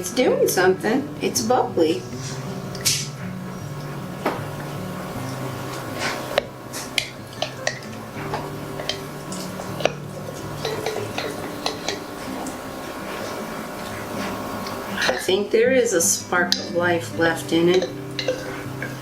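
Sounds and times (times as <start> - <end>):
utensil scraping glass jar: 17.6 - 19.0.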